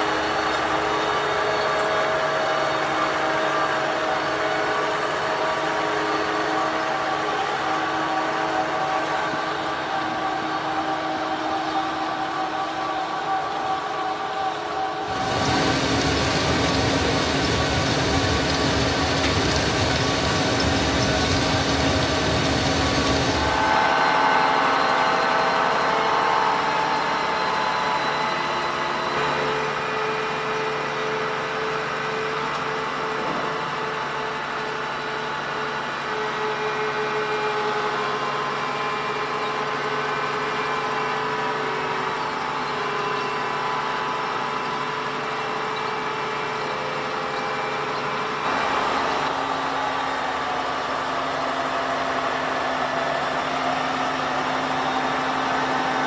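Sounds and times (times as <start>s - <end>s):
heavy machinery engine under load: 15.1s - 23.6s.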